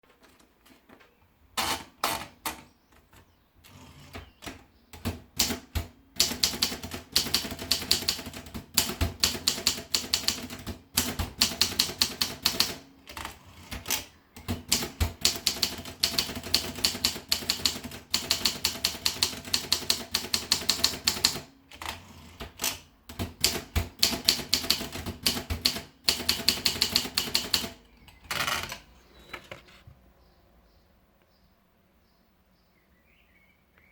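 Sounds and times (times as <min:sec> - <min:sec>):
typewriter keystrokes: 0:01.6 - 0:02.7, 0:03.7 - 0:28.9.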